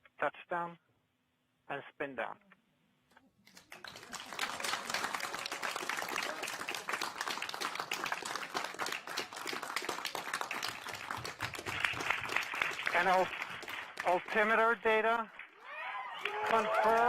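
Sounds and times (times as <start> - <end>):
crowd applauding: 3.5 - 17.0.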